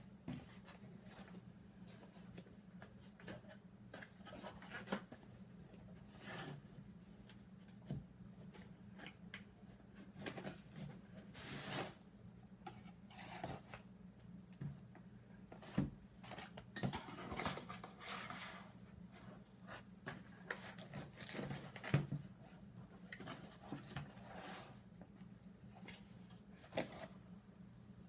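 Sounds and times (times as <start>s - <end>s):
packaging rustling and scraping: 10.0s - 12.0s, 15.6s - 19.5s, 20.1s - 24.9s.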